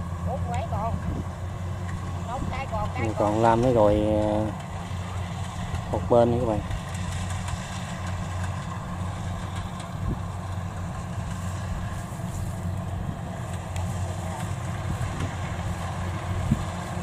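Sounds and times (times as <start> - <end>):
combine harvester engine droning: 0.0 - 17.0
threshing gear hum: 0.0 - 17.0.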